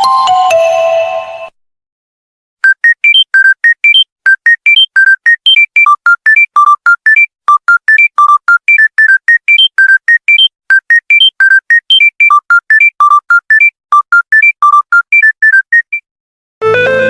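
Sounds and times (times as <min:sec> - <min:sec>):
electronic beeping ringtone: 0:02.6 - 0:16.0.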